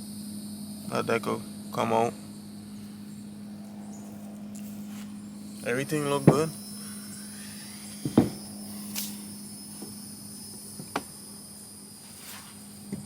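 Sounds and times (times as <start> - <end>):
steady low hum: 0.0 - 13.0
engine parts knocking: 5.9 - 6.6.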